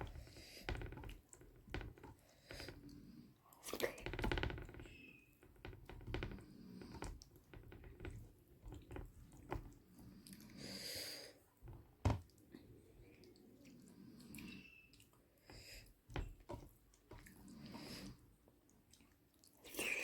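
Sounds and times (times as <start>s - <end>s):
person chewing food: 15.8s - 20.0s.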